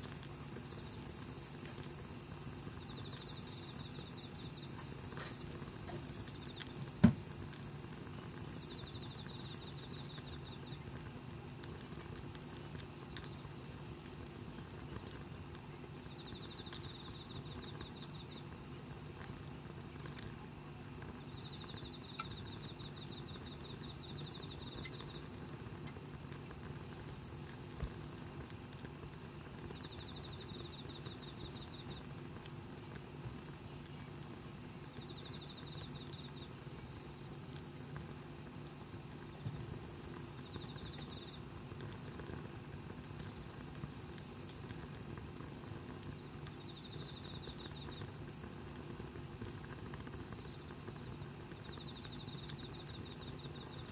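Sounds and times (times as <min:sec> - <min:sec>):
insects pulsed trills: 0:00.0 - 0:10.7
insects buzzing: 0:00.0 - 0:10.8.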